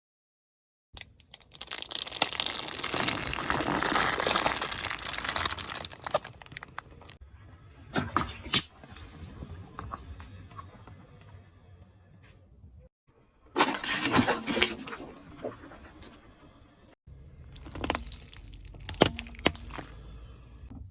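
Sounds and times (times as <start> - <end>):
car tyre crushing crunchy objects: 1.6 - 7.1, 17.5 - 20.1.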